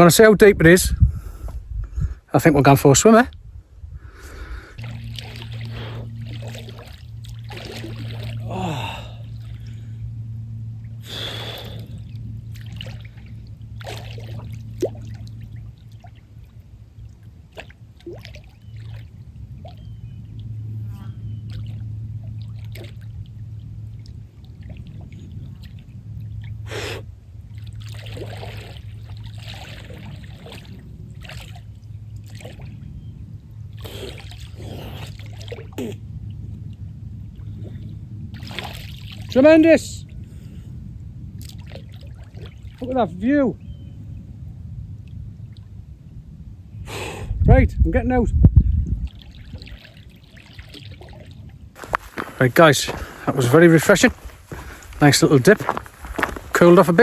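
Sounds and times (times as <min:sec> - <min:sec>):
steady low hum: 0:00.0 - 0:57.0
water splashing: 0:04.8 - 0:09.8, 0:12.5 - 0:19.2, 0:21.5 - 0:26.5, 0:27.5 - 0:32.8, 0:38.4 - 0:39.4, 0:49.0 - 0:57.0
gasping breaths: 0:08.5 - 0:09.8.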